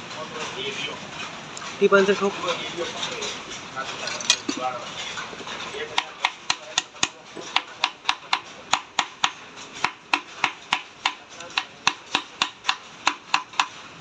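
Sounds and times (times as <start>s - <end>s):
rapid hammer taps: 5.9s - 13.8s.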